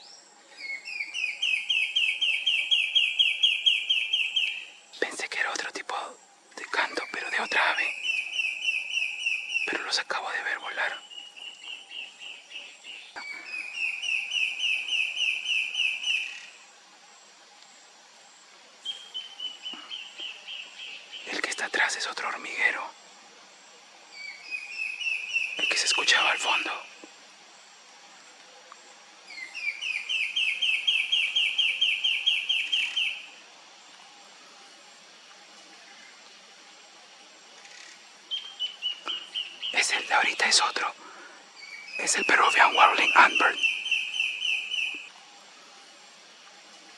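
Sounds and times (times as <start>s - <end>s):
bird singing clear notes: 24.2s - 27.0s, 29.3s - 33.4s, 41.6s - 45.1s
antbird whistled notes: 29.3s - 33.3s.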